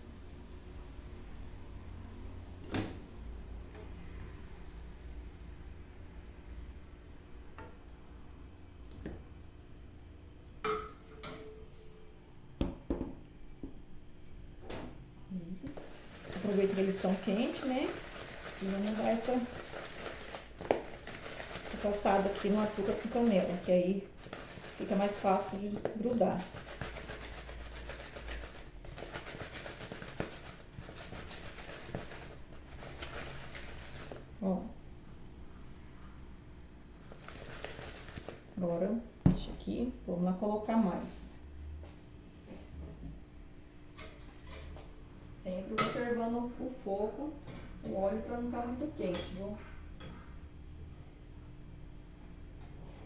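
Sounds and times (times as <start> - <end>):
metal utensil knocking on pan: 10.7 - 11.6
fritters rubbing in sugar: 15.7 - 34.4, 37.0 - 38.5.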